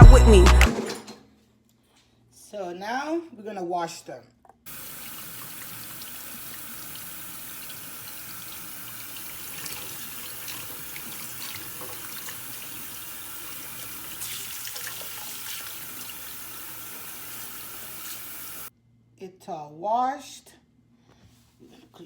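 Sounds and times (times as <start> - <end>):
faucet running into sink: 4.7 - 18.7
small water splashes: 14.0 - 16.2.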